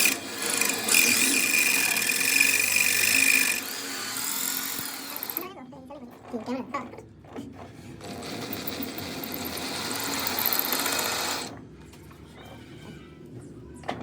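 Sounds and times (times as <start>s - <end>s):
metalworking tool buzzing on steel: 0.0s - 5.4s, 8.0s - 11.5s.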